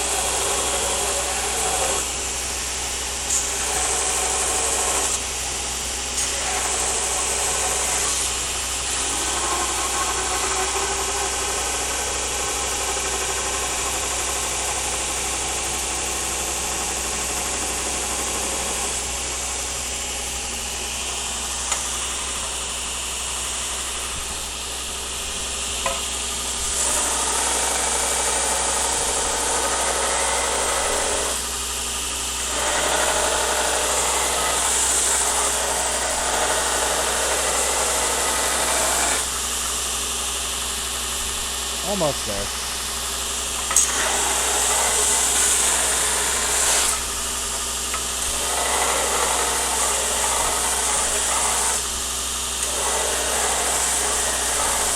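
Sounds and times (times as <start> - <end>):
machine running with a rasping noise: 0.0 - 54.9.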